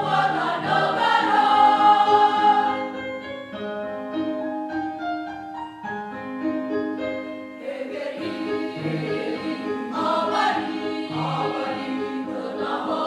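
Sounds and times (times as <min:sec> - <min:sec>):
choir singing: 0:00.0 - 0:03.4, 0:07.4 - 0:13.0
piano accompaniment: 0:00.0 - 0:13.0.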